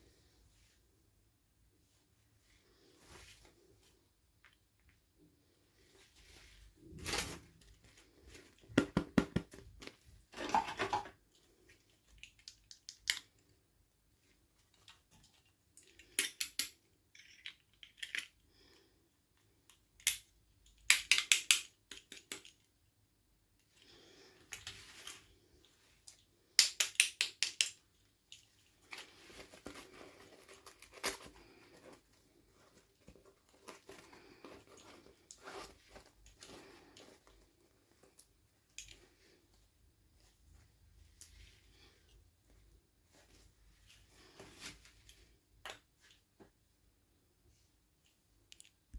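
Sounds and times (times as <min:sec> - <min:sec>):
soft rustling: 0:00.0 - 0:08.7, 0:28.1 - 0:48.5.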